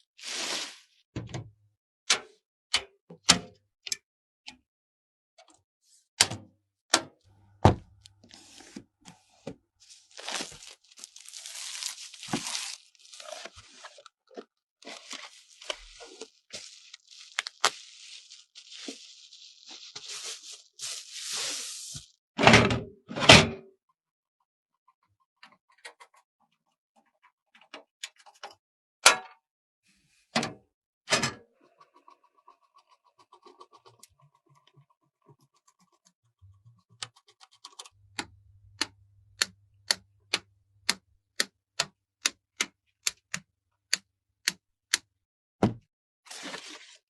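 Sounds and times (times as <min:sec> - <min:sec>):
crinkly rustling and tearing: 0:09.8 - 0:22.1.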